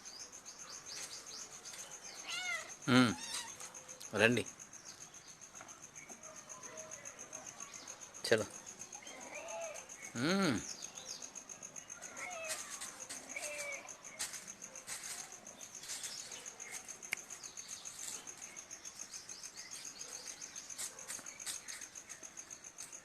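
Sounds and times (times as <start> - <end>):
crickets trilling: 0.0 - 23.0
faint short chirping calls: 0.0 - 23.0
light clicks and rustles: 12.3 - 18.6.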